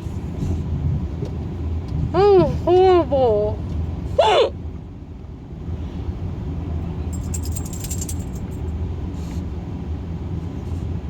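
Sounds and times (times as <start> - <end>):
car cabin rumble: 0.0 - 4.9
keys jingling: 7.1 - 8.6.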